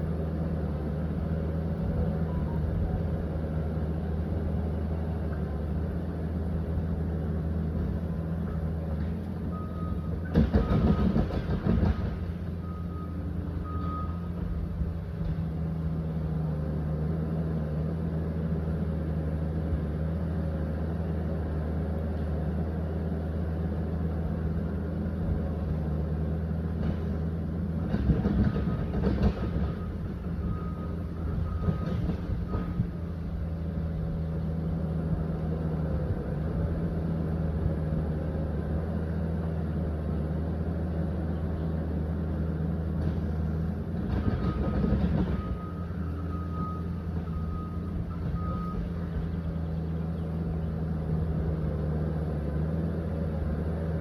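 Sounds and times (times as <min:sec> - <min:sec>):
bulldozer diesel engine running: 0:00.0 - 0:54.0
reversing alarm beeps: 0:02.2 - 0:03.1, 0:09.4 - 0:11.4, 0:12.0 - 0:14.7, 0:29.6 - 0:33.1, 0:44.2 - 0:49.3
clatter: 0:10.1 - 0:12.5, 0:27.8 - 0:30.7, 0:43.0 - 0:45.7.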